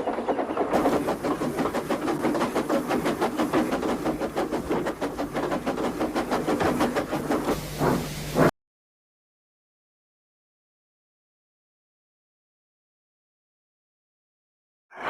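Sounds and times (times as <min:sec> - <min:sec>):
train running along: 0:00.0 - 0:08.5.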